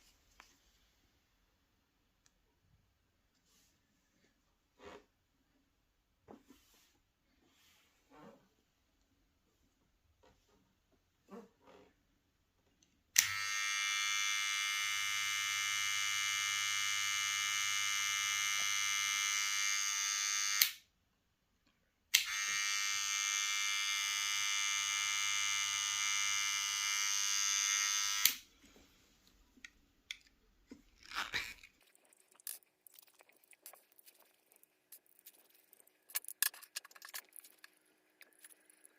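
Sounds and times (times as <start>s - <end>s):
hair trimmer buzzing: 13.2s - 20.8s, 22.2s - 28.4s.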